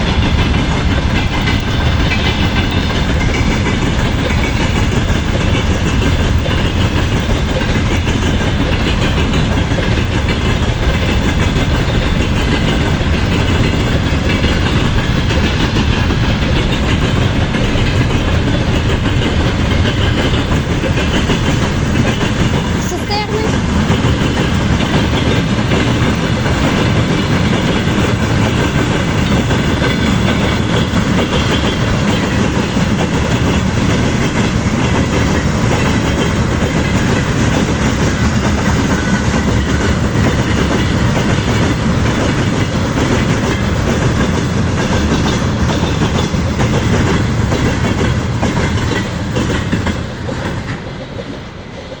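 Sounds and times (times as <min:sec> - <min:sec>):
train wheels clattering over rail joints: 0:00.0 - 0:52.0.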